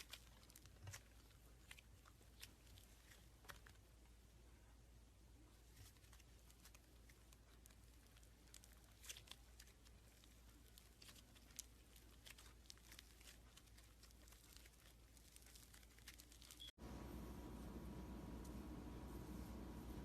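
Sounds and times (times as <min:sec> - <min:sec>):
slime crackling and popping: 0:00.0 - 0:04.0, 0:05.8 - 0:16.8.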